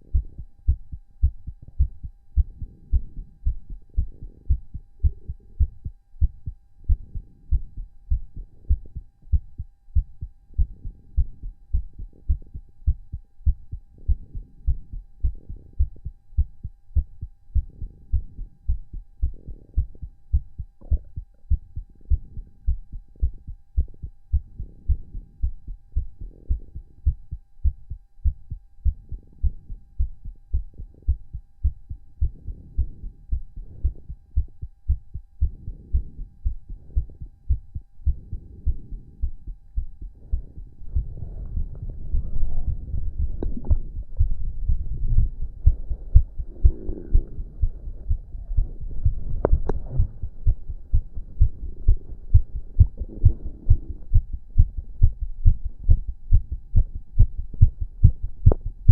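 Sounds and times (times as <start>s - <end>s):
heart beating: 0.0s - 58.9s
heavy breathing: 32.2s - 34.5s, 35.4s - 54.9s.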